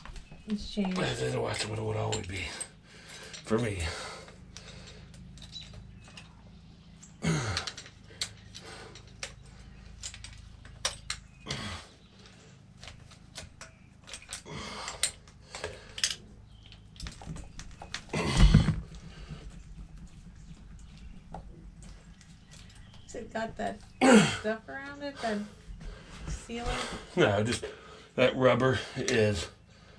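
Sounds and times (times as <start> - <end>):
hand tools clicking and tapping: 0.0 - 23.1.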